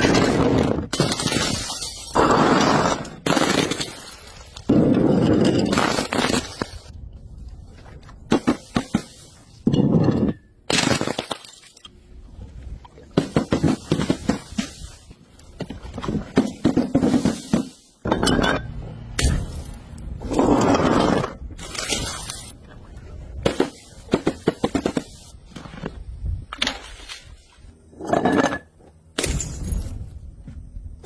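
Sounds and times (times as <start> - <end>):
glass bottles smashing: 3.3 - 4.4
glass shards scraping: 19.4 - 22.6.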